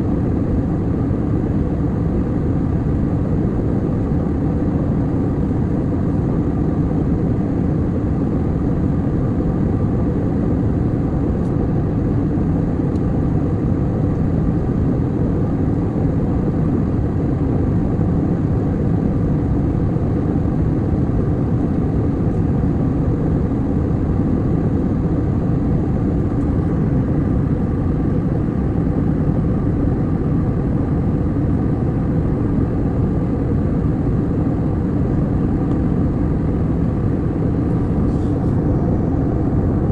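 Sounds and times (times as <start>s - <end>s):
airliner engines droning: 0.0s - 39.9s.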